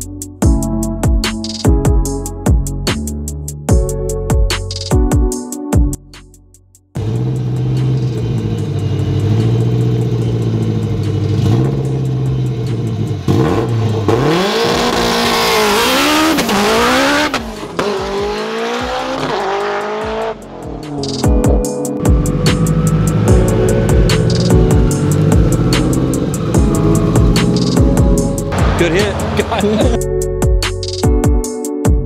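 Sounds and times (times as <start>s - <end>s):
drag race car engine: 7.0s - 20.9s, 22.1s - 30.0s.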